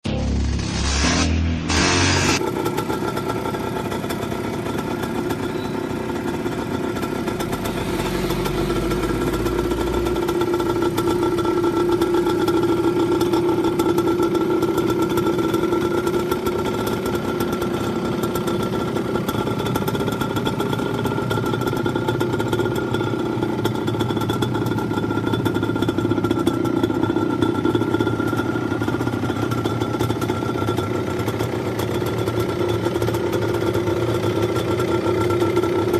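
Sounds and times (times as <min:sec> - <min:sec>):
motorcycle engine idling: 0:01.7 - 0:35.9.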